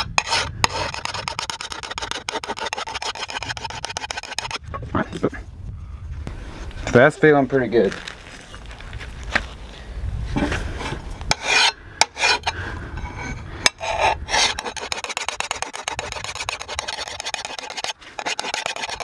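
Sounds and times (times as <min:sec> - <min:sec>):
hand file rasping on steel: 0:00.0 - 0:04.6, 0:11.3 - 0:19.0.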